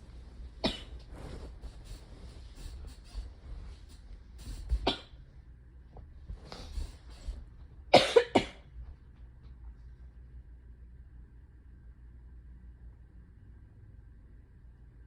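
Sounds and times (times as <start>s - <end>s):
woman coughing: 0.6s - 0.9s, 4.9s - 5.1s, 7.9s - 8.6s.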